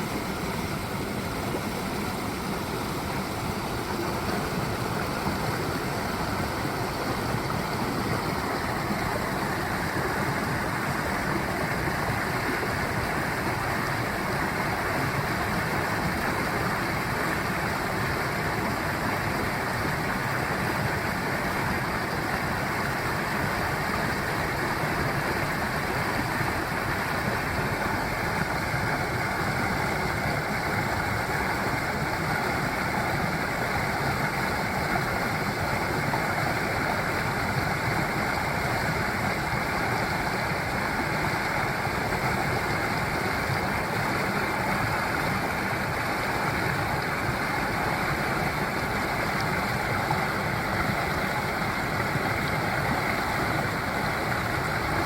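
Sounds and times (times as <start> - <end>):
stream water rushing: 0.0 - 55.0.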